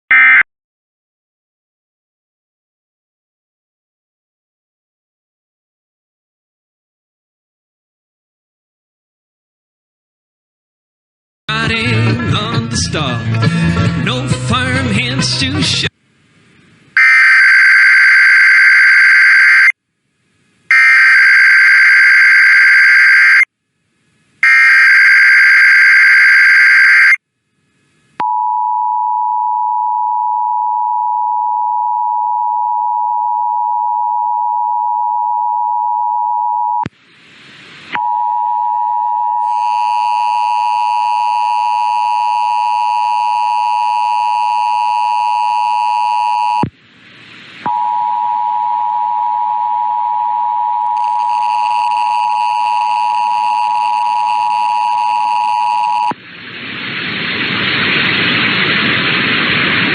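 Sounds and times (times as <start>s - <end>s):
screeching data tones: 17.0s - 19.8s, 20.7s - 23.5s, 24.4s - 27.2s
two-tone attention signal: 24.4s - 27.2s
crackle of noise: 50.8s - 59.9s.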